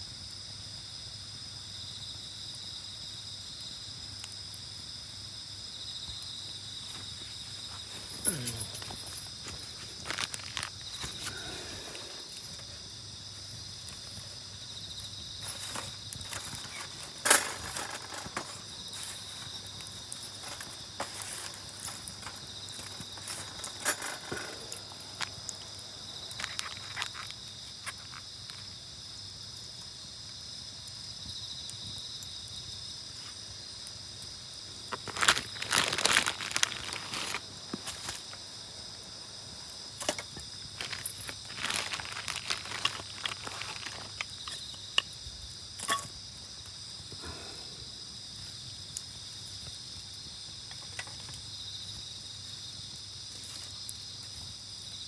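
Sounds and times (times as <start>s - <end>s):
crickets and insects chirping: 0.0s - 55.0s
campfire crackling and popping: 9.3s - 45.2s.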